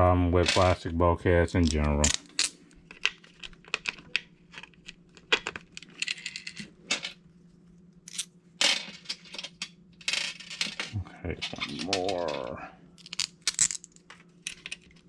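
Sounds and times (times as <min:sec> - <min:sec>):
metal screws and washers clinking: 0:08.1 - 0:15.0.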